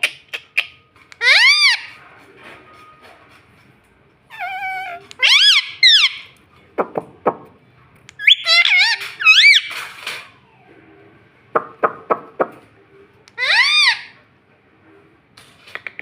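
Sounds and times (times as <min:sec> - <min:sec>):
parakeet squawking: 0:00.0 - 0:02.0, 0:04.6 - 0:06.4, 0:08.2 - 0:09.8, 0:13.3 - 0:14.2.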